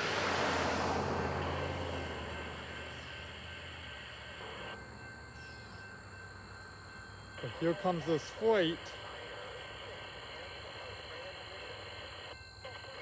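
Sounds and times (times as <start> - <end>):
low vehicle rumble: 0.0 - 7.6.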